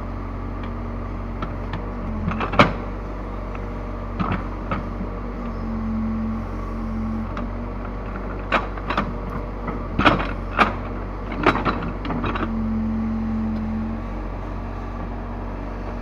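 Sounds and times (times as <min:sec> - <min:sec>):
diesel engine running: 0:00.0 - 0:16.0
digging gear knocks and clanks: 0:01.4 - 0:12.8.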